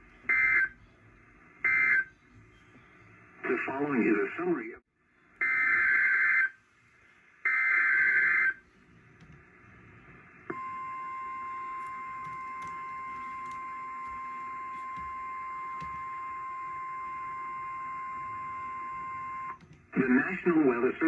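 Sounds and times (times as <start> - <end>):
steady warning alarm tone: 0.2 - 0.8, 1.6 - 2.1, 5.4 - 6.6, 7.4 - 8.6, 10.5 - 20.1.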